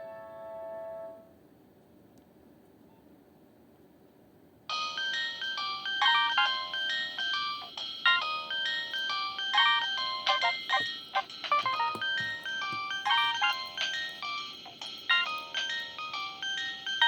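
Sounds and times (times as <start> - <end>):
mobile phone ringtone melody: 4.7 - 17.0.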